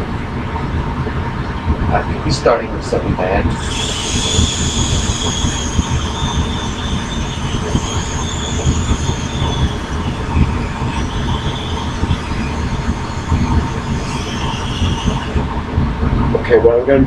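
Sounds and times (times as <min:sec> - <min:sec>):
rotor noise buffeting: 0:02.3 - 0:16.5
model helicopter motor whine: 0:03.4 - 0:16.0.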